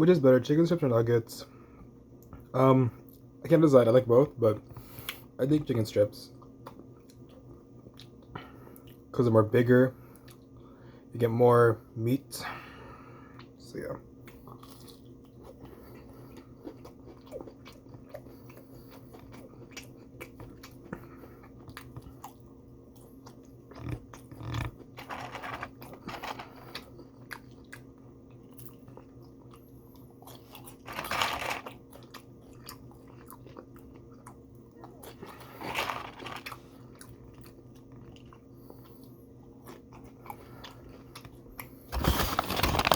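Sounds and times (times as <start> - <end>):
steady low hum: 0.0 - 42.9
chewing and biting fried chicken: 14.2 - 42.9.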